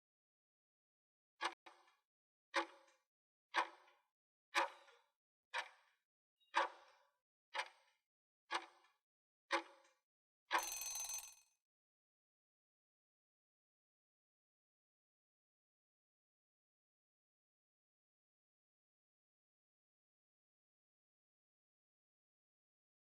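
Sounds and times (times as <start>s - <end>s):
countdown timer ticks: 10.5s - 11.3s
ringing alarm: 10.5s - 11.4s.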